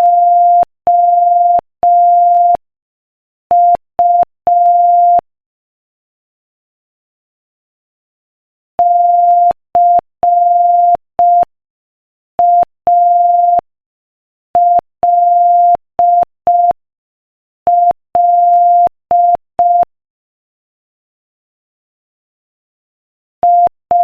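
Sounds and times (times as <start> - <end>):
morse code beeps: 0.0 - 2.6, 8.8 - 11.5, 23.4 - 24.0.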